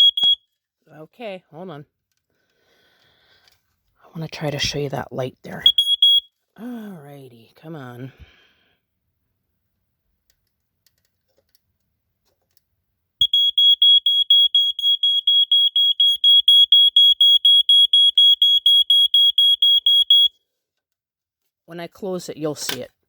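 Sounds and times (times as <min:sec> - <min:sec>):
smoke alarm beeping: 0:00.0 - 0:00.5, 0:05.6 - 0:06.3, 0:13.2 - 0:20.4.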